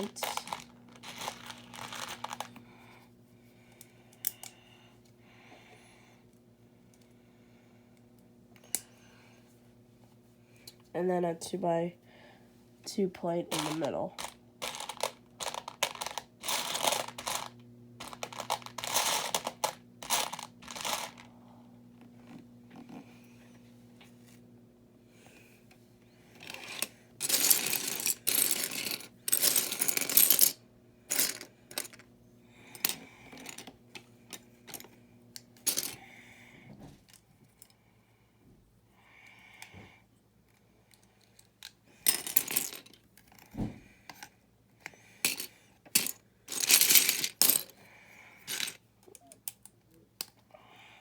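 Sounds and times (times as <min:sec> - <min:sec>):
plastic bricks clattering: 0:00.0 - 0:02.5, 0:13.5 - 0:21.3.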